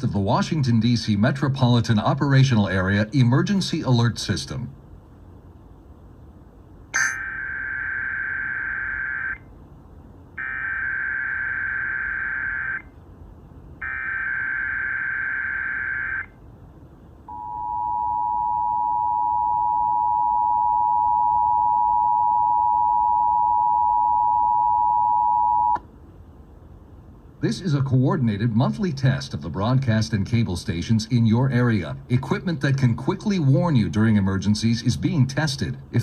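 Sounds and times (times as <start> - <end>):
two-tone attention signal: 7.0 - 9.4, 17.3 - 25.8.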